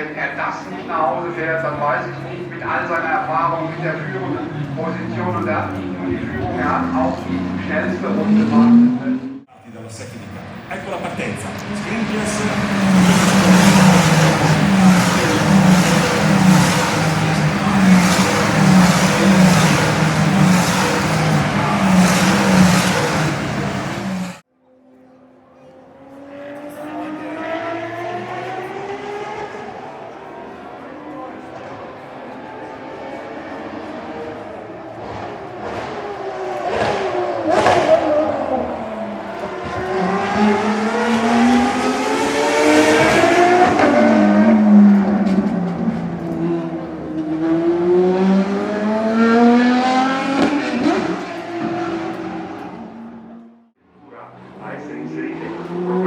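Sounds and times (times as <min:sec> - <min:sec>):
race cars passing at full throttle: 0:00.0 - 0:56.0
sharp exhaust cracks: 0:09.8 - 0:24.4.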